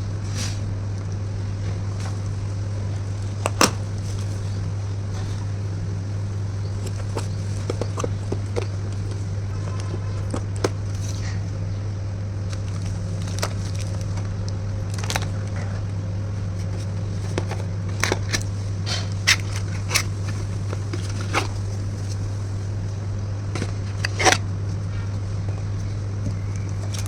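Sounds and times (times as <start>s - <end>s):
steady low hum: 0.0s - 27.0s
packaging crinkling and clicking: 6.6s - 11.4s, 12.4s - 27.0s.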